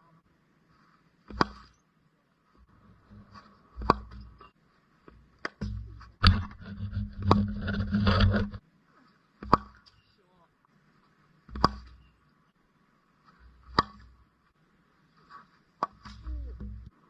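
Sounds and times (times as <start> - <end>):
cricket bat hitting ball: 3.8 - 4.2, 11.5 - 12.0.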